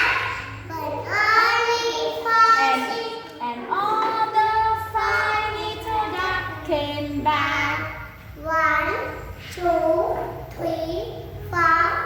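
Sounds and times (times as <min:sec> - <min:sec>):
young girl singing: 0:00.0 - 0:03.3, 0:04.7 - 0:12.0.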